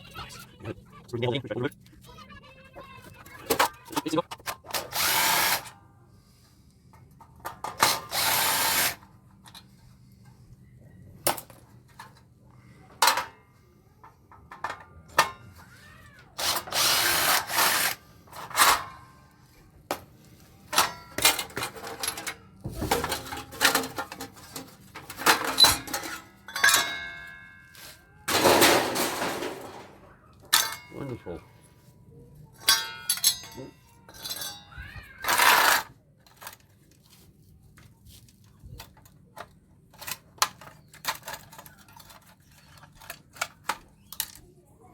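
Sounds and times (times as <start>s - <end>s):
power drill running: 4.9s - 5.6s, 8.1s - 9.0s, 16.4s - 18.0s
clicks and metal knocks: 20.7s - 27.6s.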